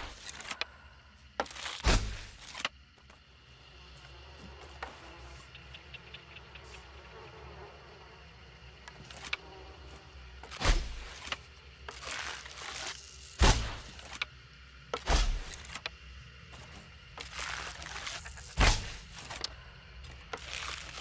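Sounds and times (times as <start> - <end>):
bow shots heavy thuds: 1.7 - 2.5, 13.4 - 14.0, 15.0 - 15.6, 18.6 - 19.0.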